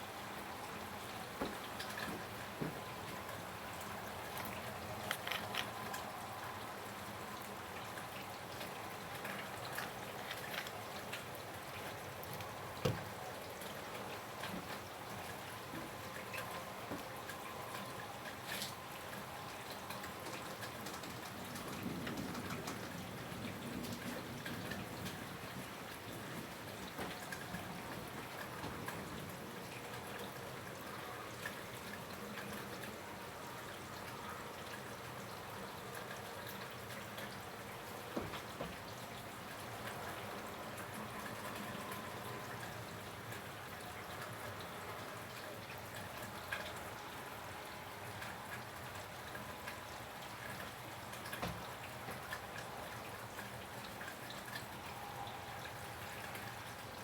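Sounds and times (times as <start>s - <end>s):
steady rain hiss: 0.0s - 57.0s
drips and taps: 1.4s - 3.4s, 7.8s - 22.9s, 48.2s - 54.9s.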